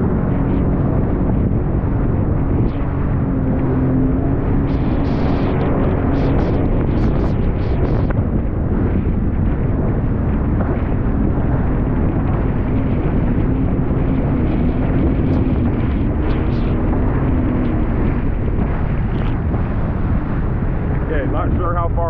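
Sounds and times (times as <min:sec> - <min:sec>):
boat engine running: 0:00.0 - 0:22.0
wind buffeting microphone: 0:00.0 - 0:22.0.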